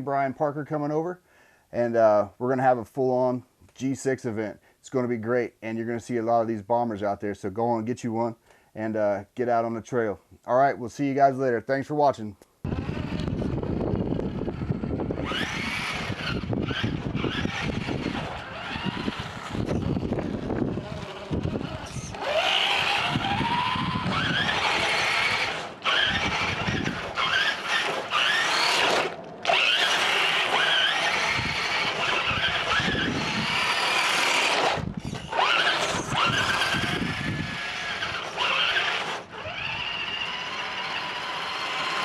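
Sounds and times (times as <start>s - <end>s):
electric motor whining: 12.6s - 42.0s
tyres scrabbling over ground: 14.4s - 42.0s.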